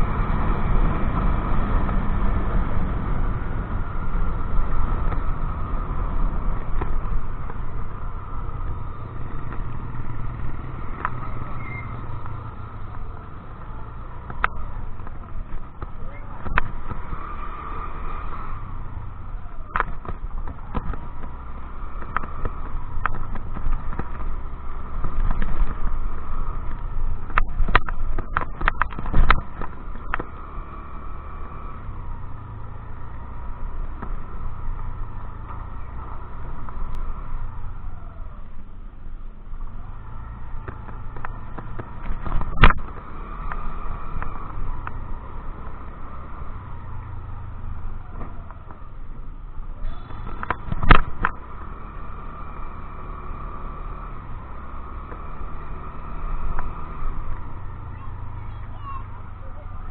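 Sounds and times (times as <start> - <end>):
wind rumbling on microphone: 0.0 - 58.9
scooter riding: 0.0 - 59.9
wind rushing over microphone: 39.7 - 51.8.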